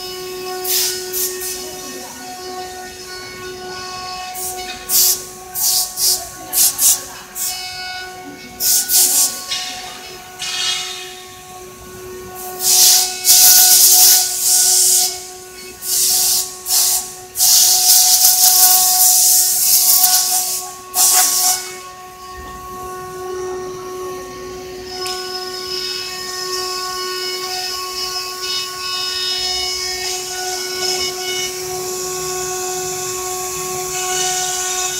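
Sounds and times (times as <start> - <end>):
router spindle whining: 0.0 - 34.9
loud hissing bursts: 12.6 - 21.8.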